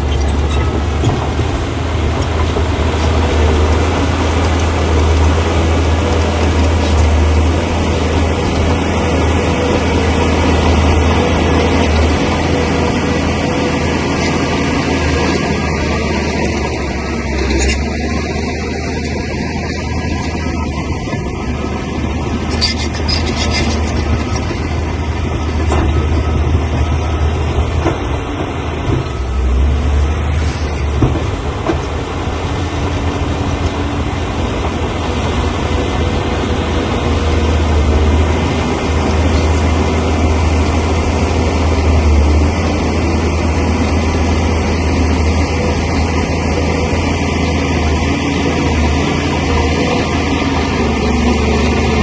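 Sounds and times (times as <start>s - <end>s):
diesel engine droning: 0.0s - 52.0s
steel tracks clanking: 43.3s - 52.0s.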